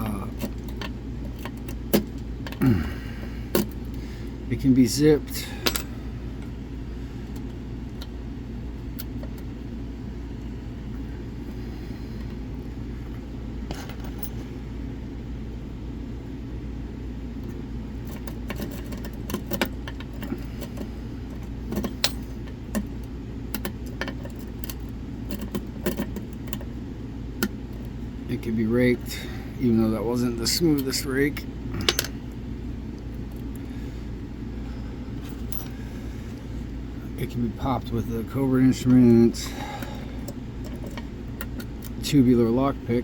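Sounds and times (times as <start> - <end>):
lock pick raking a lock: 18.0 - 22.9, 23.6 - 26.7.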